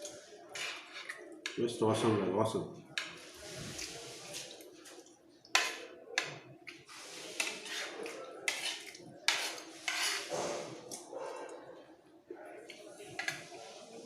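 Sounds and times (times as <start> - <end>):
spoon scraping a plate: 0.5 - 1.6, 6.7 - 11.0, 13.1 - 14.0.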